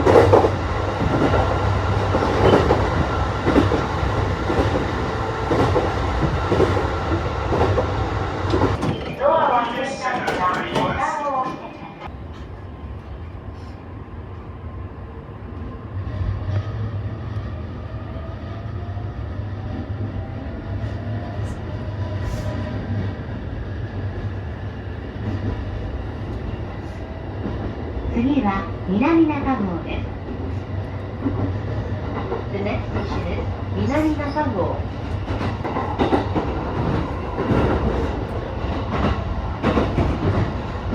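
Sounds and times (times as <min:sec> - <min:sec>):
train wheels rumbling on rails: 0:00.0 - 0:13.8, 0:15.1 - 0:40.9.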